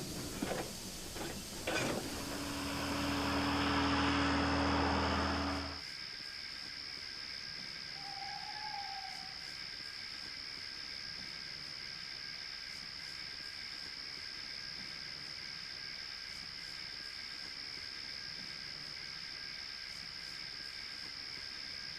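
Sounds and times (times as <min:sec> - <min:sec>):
metal clanks: 0:00.0 - 0:05.8
steam hissing: 0:00.0 - 0:05.8
high whine: 0:01.2 - 0:05.8.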